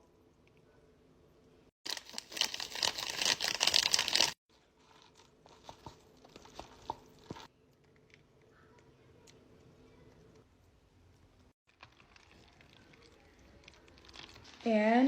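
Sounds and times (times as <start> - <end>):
wet chewing clicks: 11.7 - 14.6.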